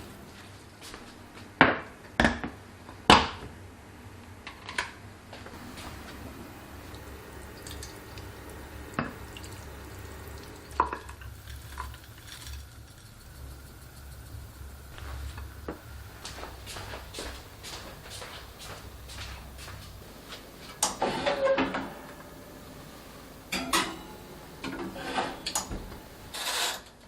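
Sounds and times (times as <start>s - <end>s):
low hum: 5.6s - 26.4s.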